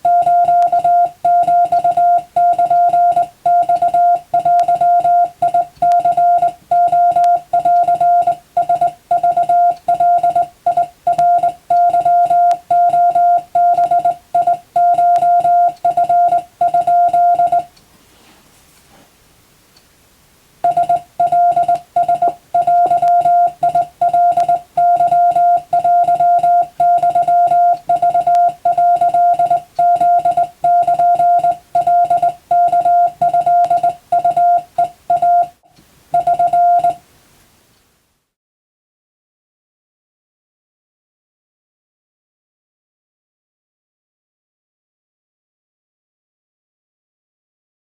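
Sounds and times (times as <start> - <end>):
morse code tone: 0.0 - 17.7, 20.6 - 37.0.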